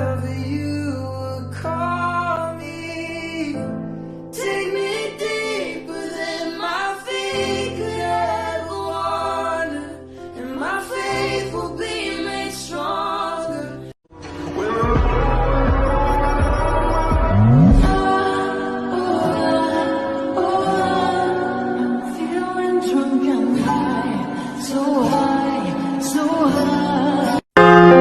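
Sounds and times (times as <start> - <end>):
person singing: 4.4 - 28.0
sustained bass notes: 15.0 - 18.0.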